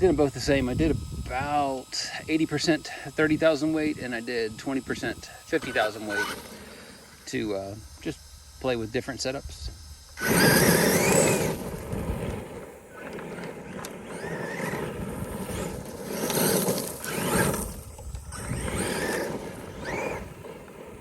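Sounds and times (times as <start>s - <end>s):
electric motor whining: 0.0s - 21.0s
tyres on the ground: 9.6s - 21.0s.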